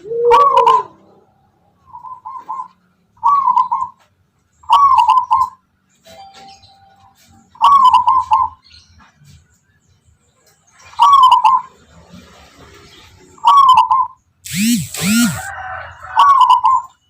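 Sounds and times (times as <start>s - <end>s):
dove cooing: 0.0s - 5.6s, 7.5s - 8.6s, 15.0s - 17.0s.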